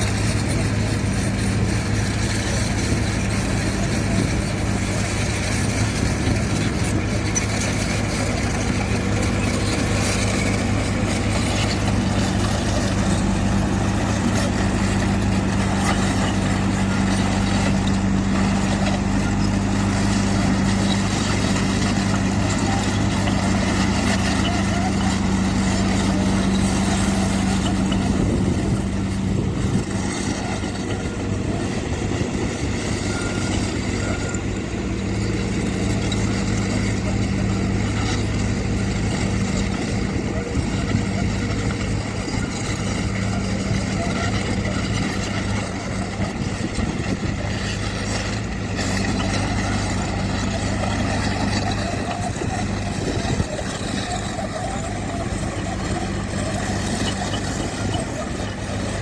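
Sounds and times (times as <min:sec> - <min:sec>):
diesel engine humming: 0:00.0 - 0:59.0.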